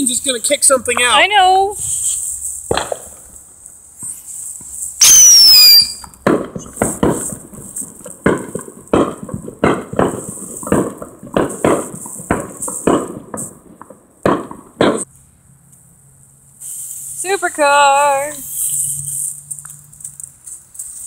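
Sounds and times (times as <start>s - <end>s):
firework sharp pops: 0.2s - 15.1s
firework whistle falling in pitch: 5.0s - 6.1s.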